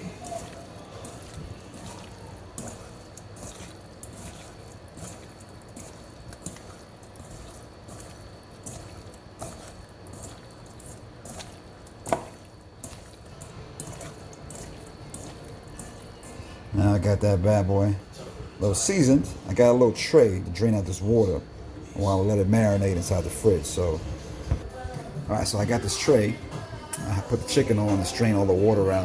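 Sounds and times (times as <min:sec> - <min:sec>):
wet squelching of raw chicken: 0:00.0 - 0:17.7.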